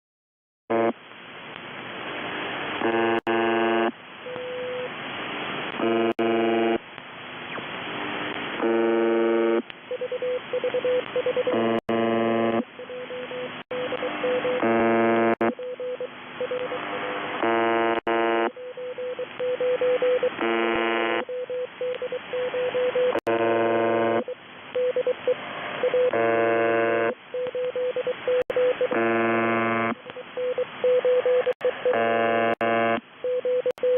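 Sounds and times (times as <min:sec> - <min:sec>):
harsh radio buzz tones: 0:00.7 - 0:01.0, 0:02.2 - 0:06.8, 0:07.5 - 0:09.7, 0:11.0 - 0:15.6, 0:16.5 - 0:18.6, 0:20.1 - 0:21.3, 0:23.1 - 0:24.4, 0:25.2 - 0:27.2, 0:28.5 - 0:30.1, 0:31.6 - 0:33.0
static hiss: 0:00.7 - 0:11.2
morse code tone: 0:08.6 - 0:25.2, 0:25.8 - 0:33.9.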